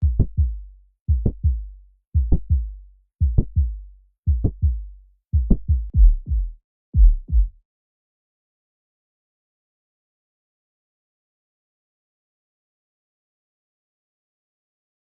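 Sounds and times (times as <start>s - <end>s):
heartbeat thuds and clicks: 0.0s - 1.6s, 2.2s - 4.8s, 5.4s - 7.6s.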